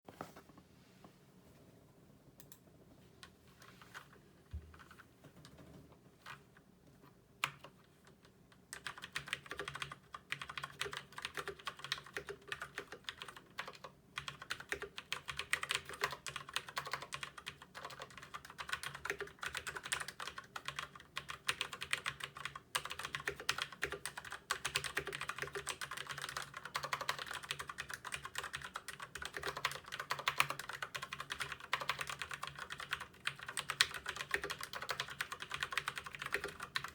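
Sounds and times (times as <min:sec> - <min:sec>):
typing on mechanical keyboard: 0:07.4 - 0:36.9.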